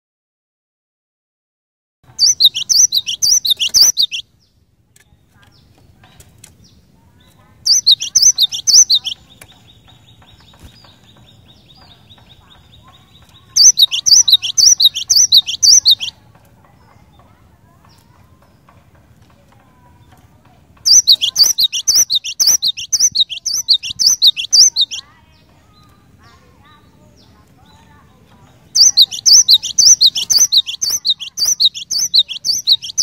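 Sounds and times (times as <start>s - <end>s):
bird singing sharp high notes: 2.2s - 4.2s, 7.6s - 9.3s, 13.4s - 16.2s, 20.9s - 25.0s, 28.8s - 33.0s
faint fast bird trill: 2.2s - 4.4s, 6.7s - 16.2s, 20.8s - 27.9s, 28.7s - 33.0s.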